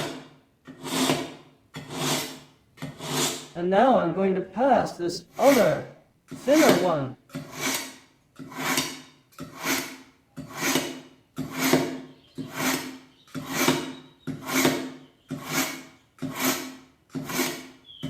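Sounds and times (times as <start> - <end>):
knife rasping through sharpener: 0.7 - 3.5, 6.6 - 11.9, 15.4 - 17.7.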